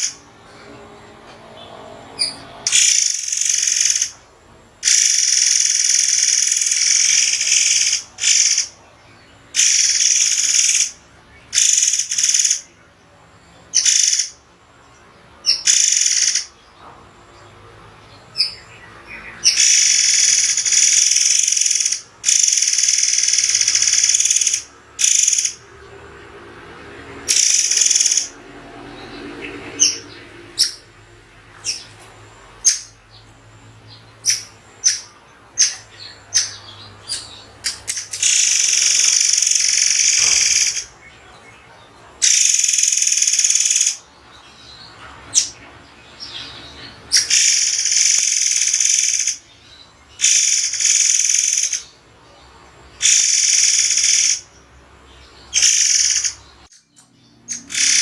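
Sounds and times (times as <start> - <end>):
bird shrill calls: 2.2 - 4.2, 4.8 - 8.8, 9.6 - 12.6, 13.8 - 14.4, 15.5 - 16.5, 19.4 - 25.6, 27.3 - 28.3, 34.2 - 41.0, 42.2 - 44.0, 47.1 - 49.4, 50.2 - 51.9, 53.0 - 54.5, 55.5 - 56.8, 57.5 - 58.0.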